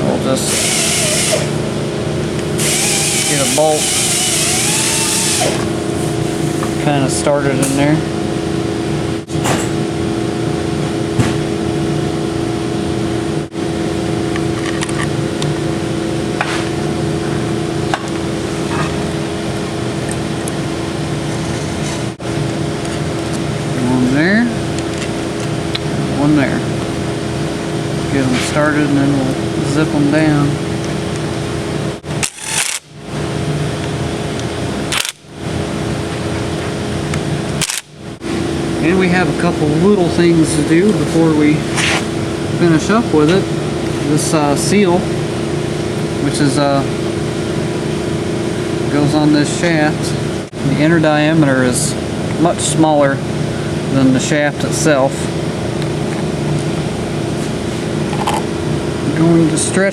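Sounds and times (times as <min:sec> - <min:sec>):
machine humming: 0:00.0 - 0:59.9
power tool hissing bursts: 0:00.4 - 0:01.6, 0:02.6 - 0:05.7, 0:32.2 - 0:32.9.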